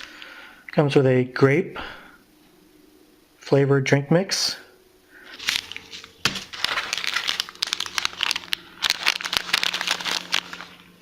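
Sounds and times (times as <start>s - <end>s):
packets crinkling: 5.3s - 11.0s.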